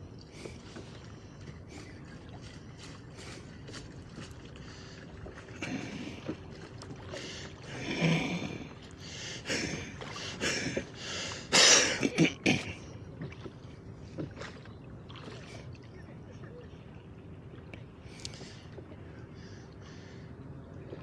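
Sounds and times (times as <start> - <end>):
water slapping against boat hull: 0.4 - 7.7, 13.1 - 15.7.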